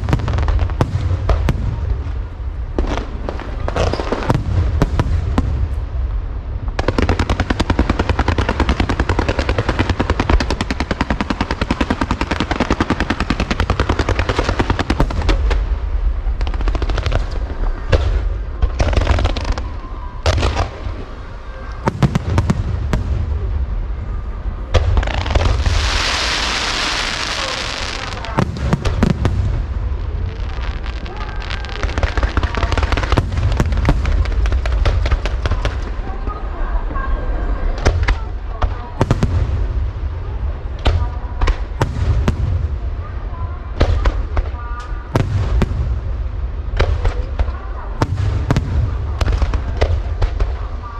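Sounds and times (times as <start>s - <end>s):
hissing crackle: 0.0s - 36.3s
deep fireworks booms: 0.0s - 50.9s
fireworks bangs: 0.0s - 50.9s.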